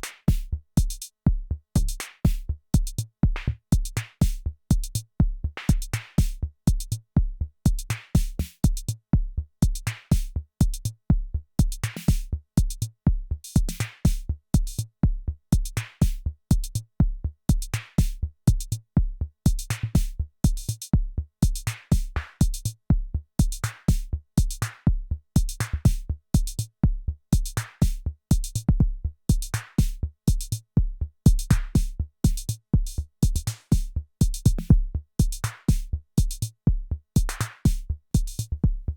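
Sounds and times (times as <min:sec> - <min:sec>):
fast hi-hat ticks: 0:19.5 - 0:20.8, 0:29.3 - 0:30.6, 0:31.3 - 0:36.5, 0:37.2 - 0:38.6
kick drum hits: 0:28.7 - 0:38.9.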